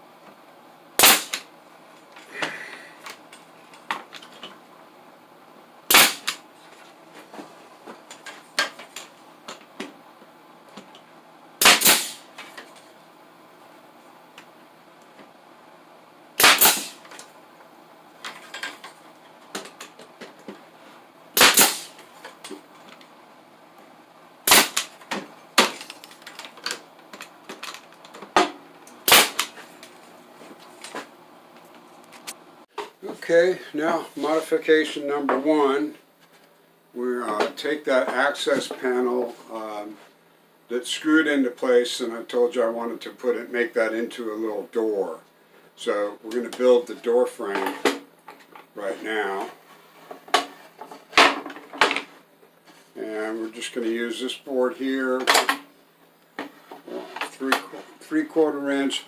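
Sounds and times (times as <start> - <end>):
loud sharp bangs with ringing: 1.0 - 1.4, 5.9 - 6.4, 11.6 - 12.2, 16.4 - 17.0, 21.4 - 22.0, 24.5 - 25.0, 29.1 - 29.5.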